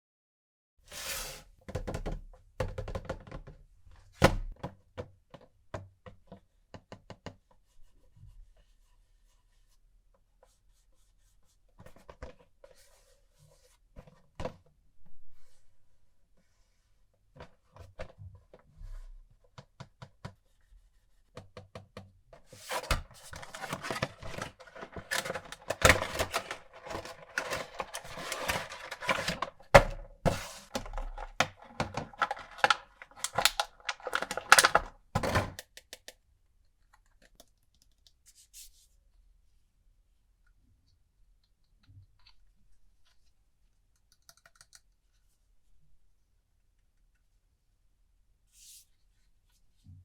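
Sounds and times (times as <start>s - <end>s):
cardboard box and plastic packaging opened: 22.6s - 35.6s
plastic crinkling: 22.7s - 29.8s, 30.5s - 34.9s.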